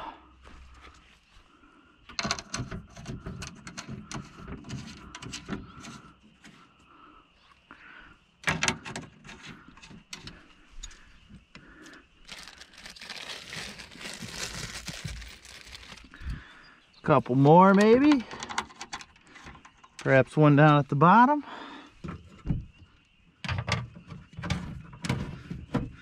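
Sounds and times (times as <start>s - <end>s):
scratchy scraping: 12.3s - 16.1s
hand tools clicking and knocking: 17.7s - 20.1s.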